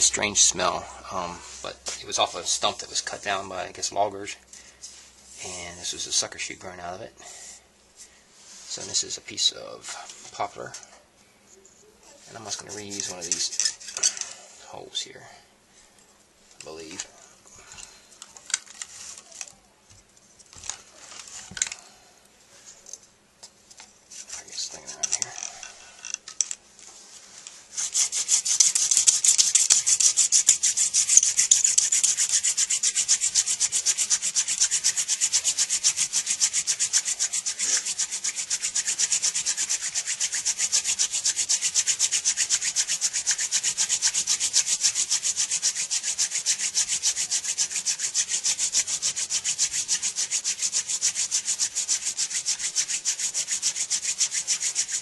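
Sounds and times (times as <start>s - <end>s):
wooden spindle rubbing in fireboard: 12.3s - 14.1s, 27.6s - 55.0s.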